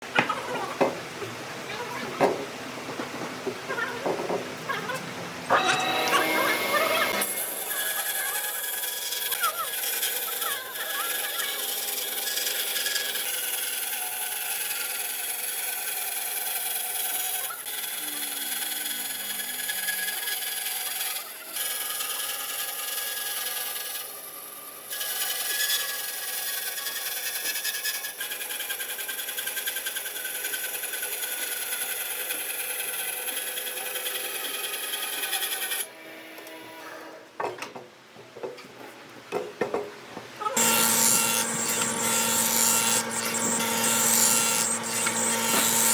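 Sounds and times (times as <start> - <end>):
power tool grinding wood: 5.5 - 35.9, 40.6 - 45.9.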